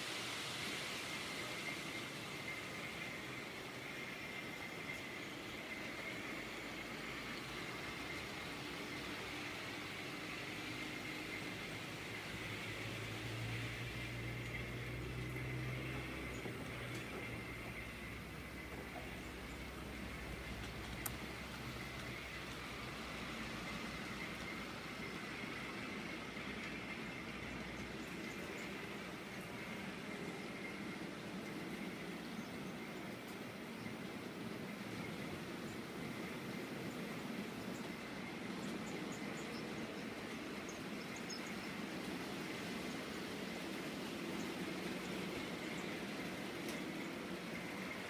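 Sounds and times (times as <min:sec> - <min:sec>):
faint high whine: 0:00.0 - 0:48.0
model train running: 0:00.0 - 0:48.0
light ticks: 0:20.6 - 0:22.6, 0:46.6 - 0:46.9.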